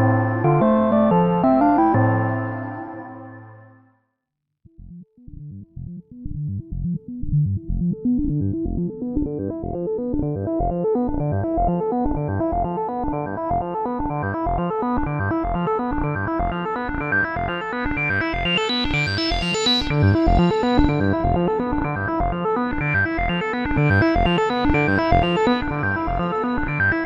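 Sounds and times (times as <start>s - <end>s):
synthesizer pulsing bass notes: 4.8s - 27.0s.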